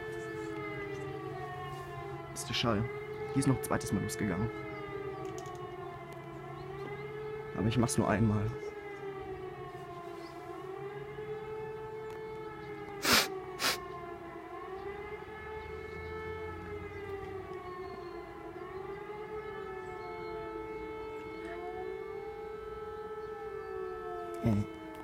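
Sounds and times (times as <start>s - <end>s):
civil defence sirens: 0.0s - 25.0s.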